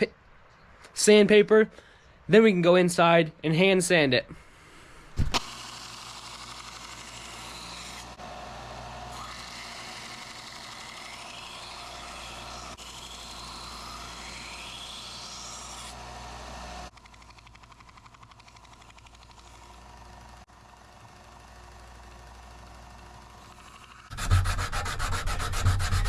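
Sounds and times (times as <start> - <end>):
power sander grinding steel: 5.4 - 26.0.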